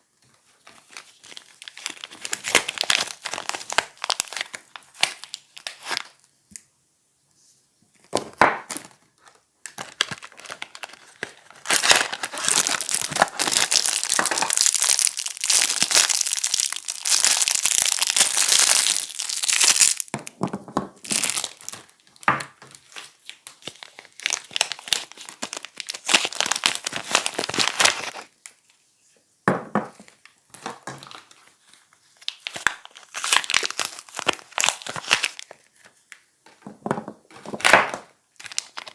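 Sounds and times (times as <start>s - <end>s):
packaging crinkling and tearing: 0.4s - 6.3s, 8.3s - 20.4s, 21.0s - 28.6s, 30.5s - 36.1s, 37.3s - 38.9s.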